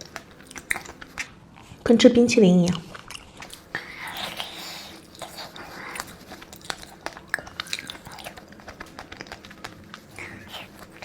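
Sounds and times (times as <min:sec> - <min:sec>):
chewing with wet mouth clicks: 0:00.0 - 0:01.8, 0:02.6 - 0:11.0
soft sucking sounds: 0:02.8 - 0:11.0.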